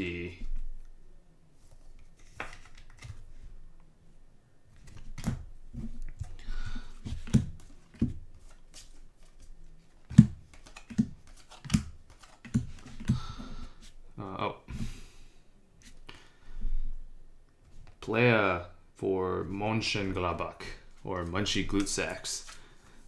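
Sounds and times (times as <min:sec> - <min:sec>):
cards shuffling rustle: 0:01.6 - 0:03.7, 0:04.8 - 0:14.0, 0:19.4 - 0:23.0.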